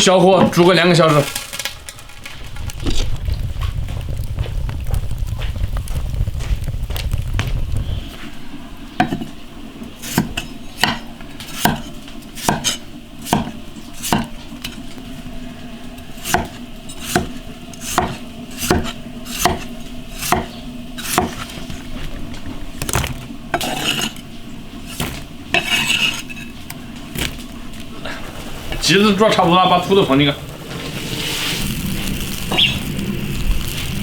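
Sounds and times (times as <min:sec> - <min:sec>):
utensils clacking against a pot: 0:24.9 - 0:27.6
background hiss: 0:26.2 - 0:34.0.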